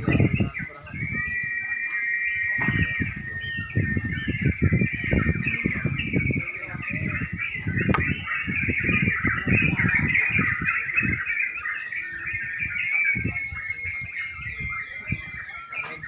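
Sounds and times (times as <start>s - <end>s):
songbirds chirping and whistling: 0.0s - 16.0s
low thuds and rumble: 7.6s - 9.0s.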